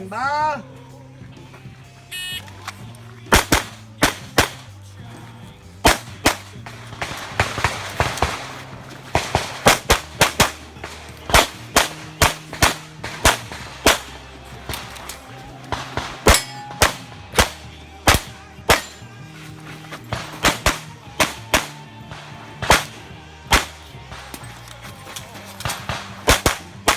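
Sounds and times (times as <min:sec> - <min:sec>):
handgun shots: 0:02.6 - 0:04.8, 0:05.8 - 0:26.9.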